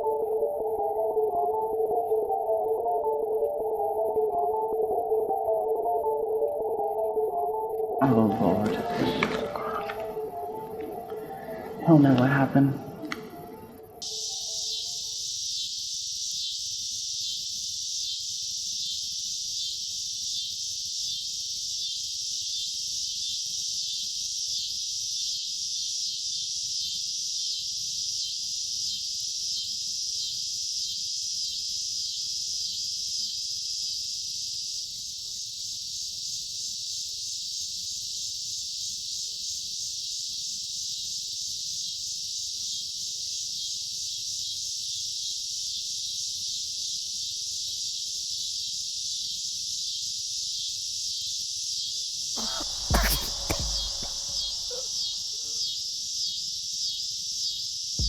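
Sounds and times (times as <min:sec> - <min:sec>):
chorus of insects trilling: 0:00.0 - 0:57.9.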